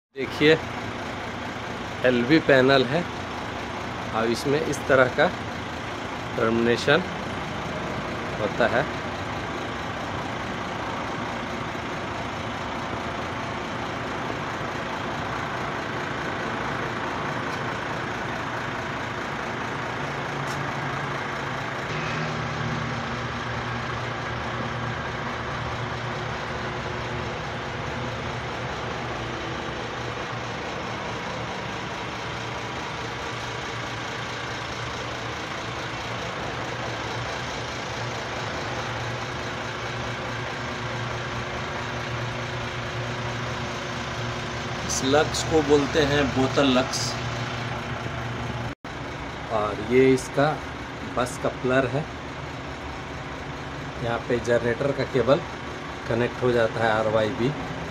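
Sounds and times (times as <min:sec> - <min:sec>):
engine humming: 0:00.2 - 0:57.9
rushing noise: 0:21.9 - 0:25.1.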